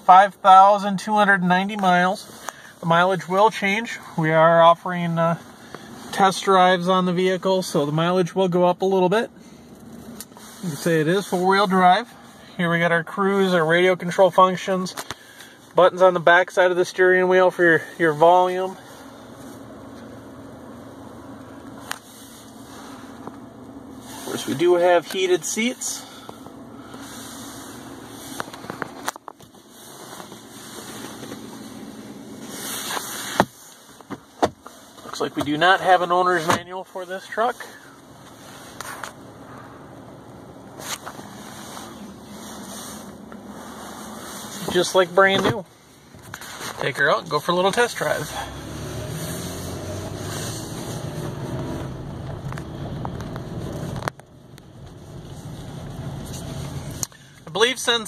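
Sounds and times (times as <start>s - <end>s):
truck engine idling: 9.0s - 58.0s.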